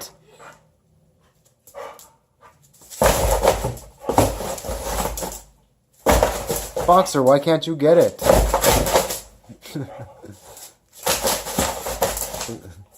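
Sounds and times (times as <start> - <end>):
dog scrabbling: 3.0 - 5.5, 8.2 - 9.3, 10.4 - 12.6.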